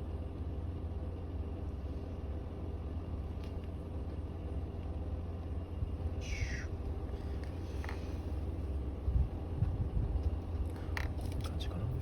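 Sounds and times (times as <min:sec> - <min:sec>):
car cabin rumble: 0:01.8 - 0:12.0.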